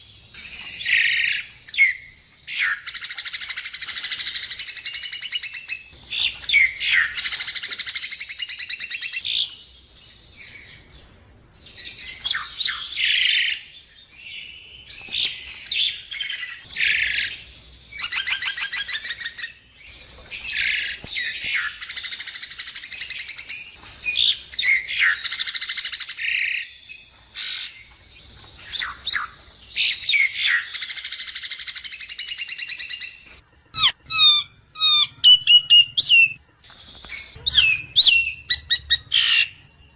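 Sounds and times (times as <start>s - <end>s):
bird chattering and whistling: 15.1s - 26.8s, 28.6s - 39.6s.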